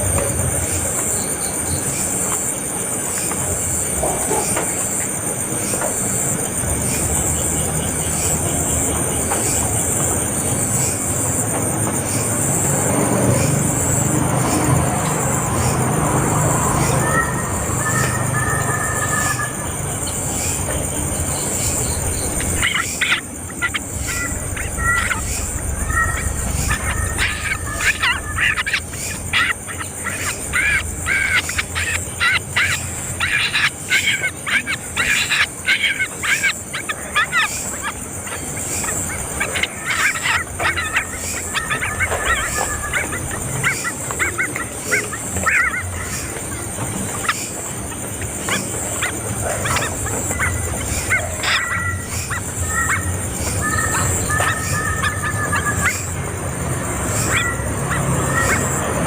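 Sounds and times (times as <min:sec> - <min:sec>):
birds making harsh calls: 0:00.0 - 0:59.0.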